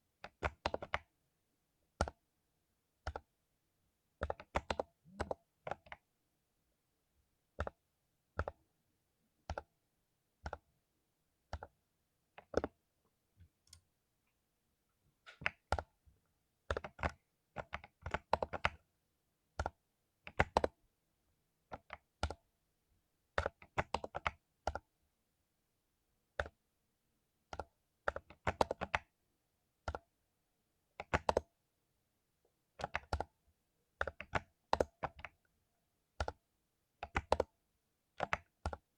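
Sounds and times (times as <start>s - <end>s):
typing on mechanical keyboard: 0.2s - 1.1s, 4.2s - 6.0s, 16.7s - 18.8s, 19.6s - 20.8s, 23.4s - 24.8s, 27.5s - 29.1s, 31.0s - 31.5s, 32.8s - 33.4s, 34.0s - 35.4s, 36.2s - 36.4s, 37.0s - 38.9s.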